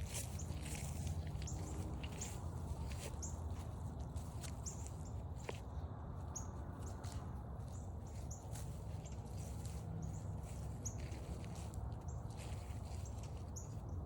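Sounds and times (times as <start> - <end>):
footsteps on forest trail: 0.0 - 14.0
steady low rumble: 0.0 - 14.0
small bird chirping: 6.4 - 7.1, 7.7 - 13.9.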